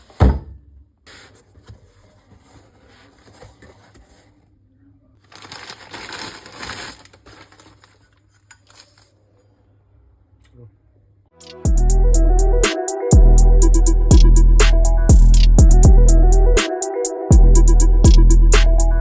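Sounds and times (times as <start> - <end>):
rustling and crinkling handling noise: 1.0 - 4.5, 5.2 - 9.6.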